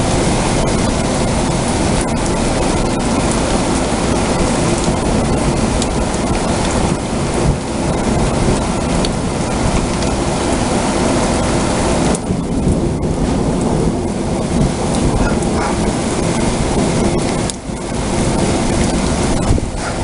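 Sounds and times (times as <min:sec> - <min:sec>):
deep low rumble: 0:00.0 - 0:20.0
heavy rain pouring: 0:00.0 - 0:20.0.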